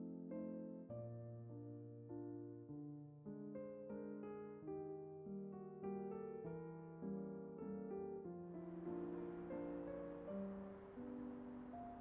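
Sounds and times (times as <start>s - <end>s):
gentle piano notes: 0.0s - 12.0s.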